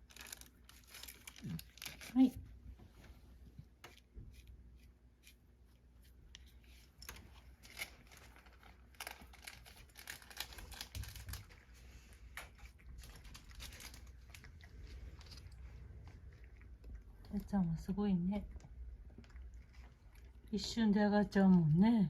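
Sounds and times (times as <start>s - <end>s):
cat crunching dry kibble: 0.0s - 2.3s, 6.4s - 17.8s, 18.4s - 20.5s.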